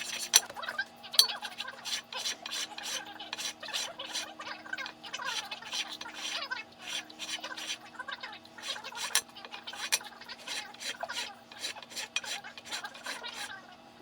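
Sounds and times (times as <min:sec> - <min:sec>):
metal rasping on sandpaper: 0:01.6 - 0:07.9, 0:08.6 - 0:13.6.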